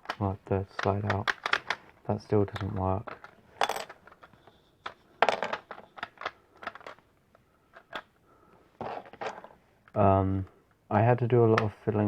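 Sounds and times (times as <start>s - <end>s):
plastic bricks clicking and clattering: 0.0s - 7.1s, 7.7s - 8.1s.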